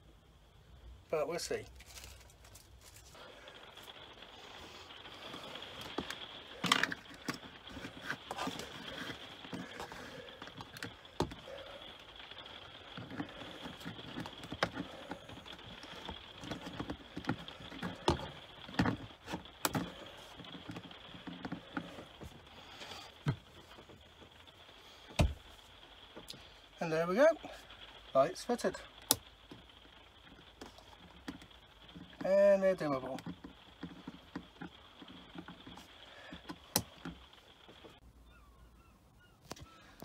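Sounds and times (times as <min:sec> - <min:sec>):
handling clicks and knocks: 0:05.2 - 0:22.5, 0:28.5 - 0:38.0.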